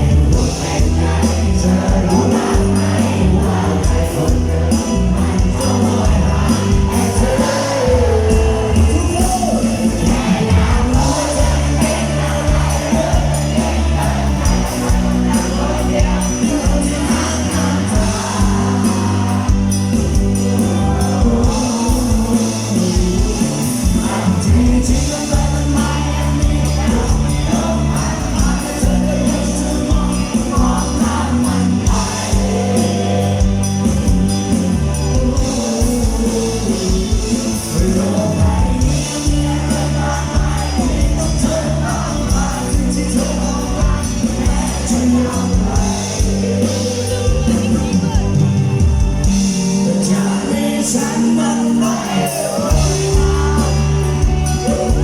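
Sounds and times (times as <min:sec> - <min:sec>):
live band playing pop song: 0:00.0 - 0:55.0
person singing: 0:49.7 - 0:55.0.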